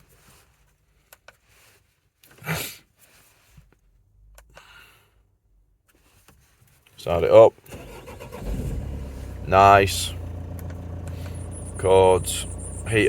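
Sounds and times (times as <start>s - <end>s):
faint clicks: 10.2s - 11.8s.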